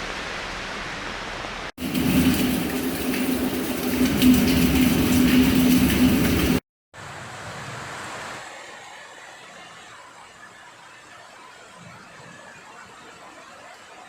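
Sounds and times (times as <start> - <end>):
rain hissing: 1.6 - 8.6.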